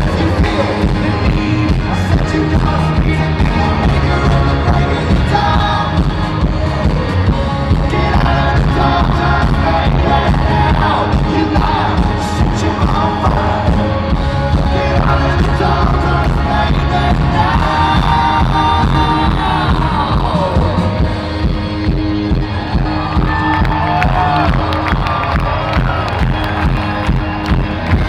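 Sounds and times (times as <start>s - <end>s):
person singing: 0.0s - 21.6s
live rock band playing: 0.0s - 28.0s.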